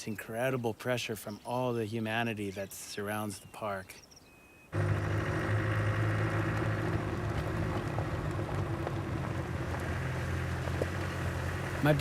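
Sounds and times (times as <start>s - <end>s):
engine running steadily: 4.8s - 12.0s.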